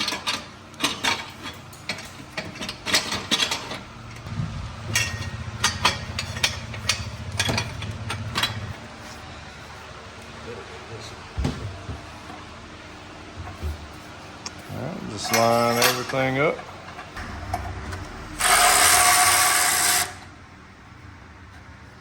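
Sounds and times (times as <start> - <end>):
low steady hum: 4.0 - 9.7, 16.9 - 21.6
metal clinks and knocks: 4.8 - 8.8.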